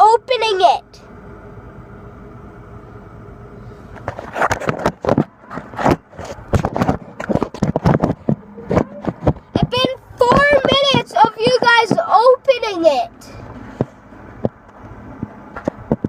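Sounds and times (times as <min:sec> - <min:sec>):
low hum: 0:00.0 - 0:16.0
knocks scrapes and rustling: 0:03.9 - 0:12.2.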